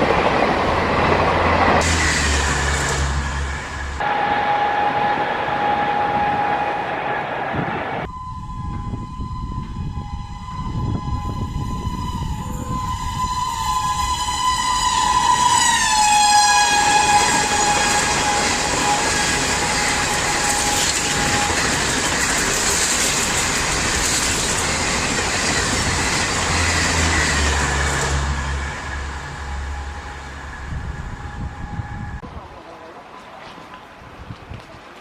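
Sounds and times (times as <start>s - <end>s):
train coaches rattling on track: 0.0s - 8.0s, 11.0s - 35.0s
locomotive horn blast: 1.8s - 22.2s, 25.8s - 32.2s.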